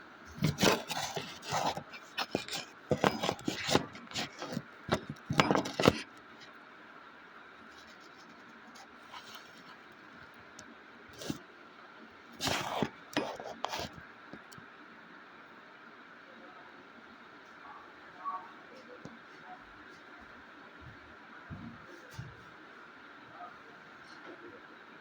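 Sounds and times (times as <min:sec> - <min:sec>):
faint steady hum: 0:00.0 - 0:25.0
hard objects knocking and scraping: 0:00.4 - 0:06.2, 0:11.2 - 0:11.4, 0:12.4 - 0:14.0.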